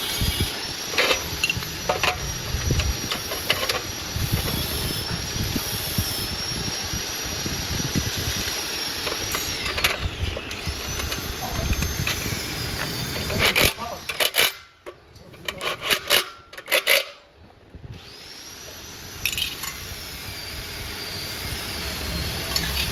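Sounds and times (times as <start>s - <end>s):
grass chopper machine whining: 0.0s - 14.6s.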